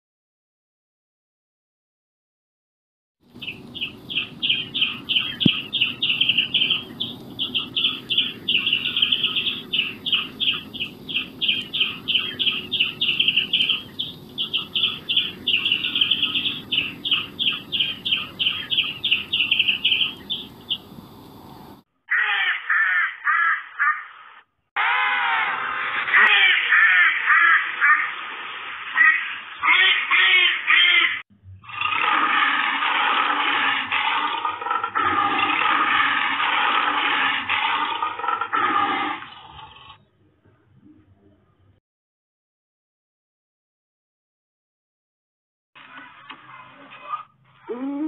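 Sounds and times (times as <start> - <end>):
bird rapid high-pitched calls: 3.4 - 21.1, 29.0 - 31.2
animal call with bending pitch: 22.1 - 28.2, 45.9 - 48.0.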